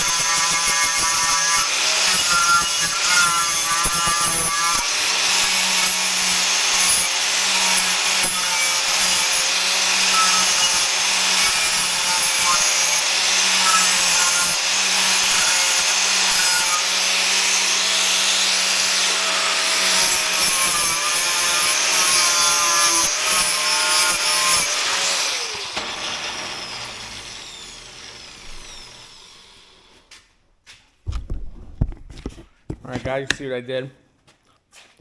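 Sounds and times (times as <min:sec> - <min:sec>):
wire wheel grinder stripping paint: 0:00.0 - 0:30.1
knocks: 0:31.0 - 0:33.1.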